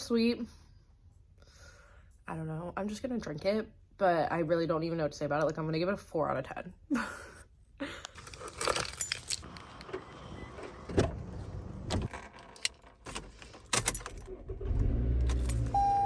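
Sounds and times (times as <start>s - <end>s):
keys jangling: 8.2s - 9.6s, 12.6s - 14.3s, 15.3s - 15.8s
car engine starting and running: 9.4s - 16.0s
short beep: 15.7s - 16.0s.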